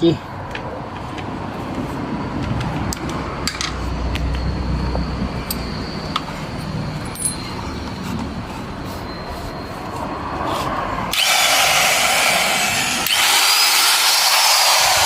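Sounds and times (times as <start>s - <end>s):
metallic clicks and clinks: 5.4s - 8.0s.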